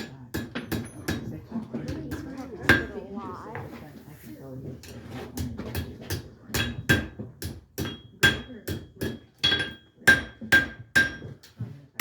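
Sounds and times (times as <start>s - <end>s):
hammer striking steel on anvil: 0.0s - 1.3s, 2.1s - 2.9s, 5.7s - 11.4s.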